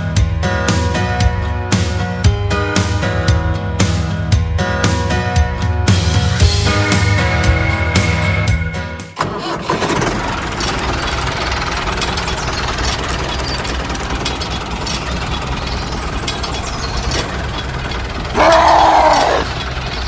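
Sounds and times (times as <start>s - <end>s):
rattling clicks: 9.2s - 20.0s
small tractor motor running: 9.2s - 20.0s.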